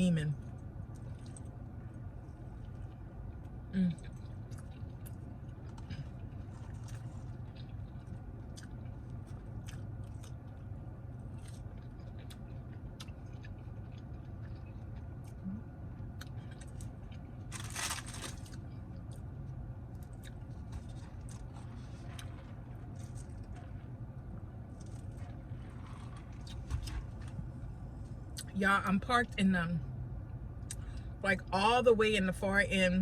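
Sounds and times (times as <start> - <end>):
steady low hum: 0.0 - 33.0
chewing and biting food: 0.5 - 27.7
crunching rustle: 4.1 - 15.4, 16.2 - 19.2, 19.9 - 27.7.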